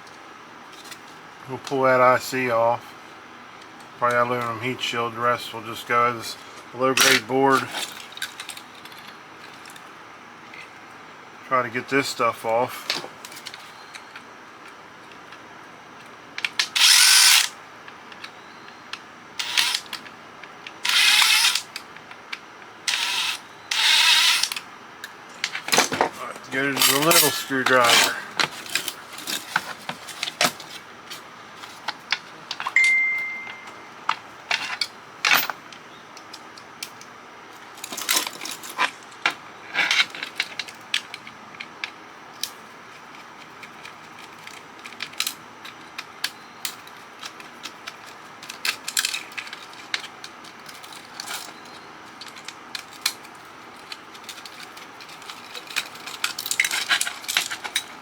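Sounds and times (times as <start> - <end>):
screwdriver and screws clinking on metal: 19.4 - 20.0, 25.4 - 30.4, 47.2 - 57.9
short ringing tone: 32.8 - 34.0.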